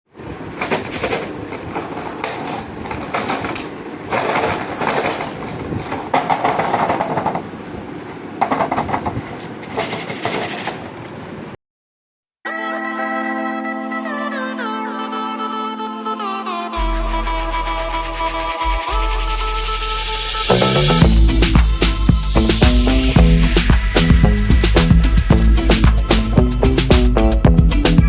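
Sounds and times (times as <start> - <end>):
music: 12.5 - 28.0.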